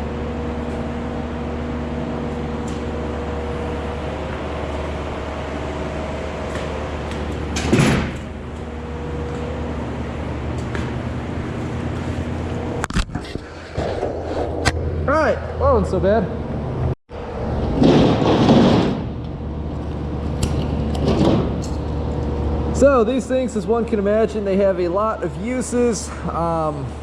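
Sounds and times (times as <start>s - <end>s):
mechanical hum with low tones: 0.0s - 27.0s
loud clatter: 17.6s - 19.2s.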